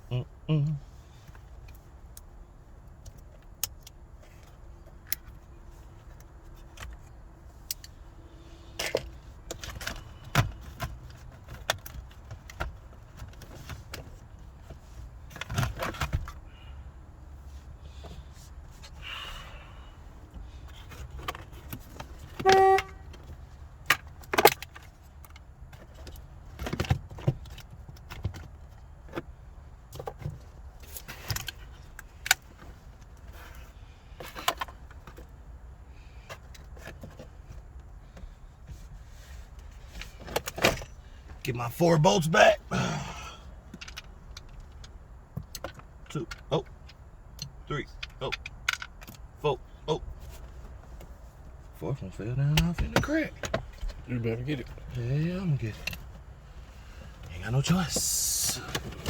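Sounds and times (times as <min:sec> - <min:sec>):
car horn toot: 0:22.4 - 0:23.2.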